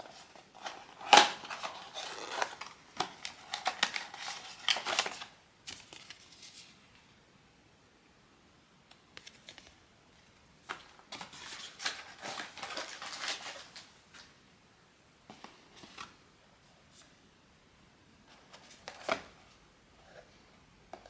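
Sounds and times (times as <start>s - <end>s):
paper and cardboard rustling: 0.0s - 6.8s, 10.7s - 14.3s, 18.2s - 20.3s.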